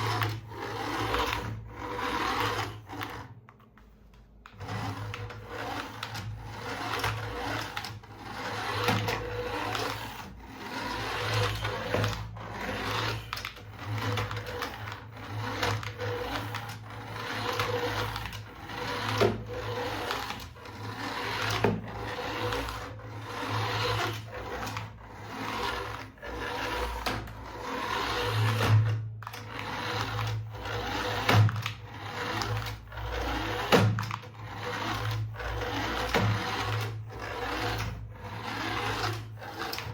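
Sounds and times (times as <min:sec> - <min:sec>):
small electric motor whirring: 0:00.0 - 0:03.3, 0:04.5 - 0:28.7.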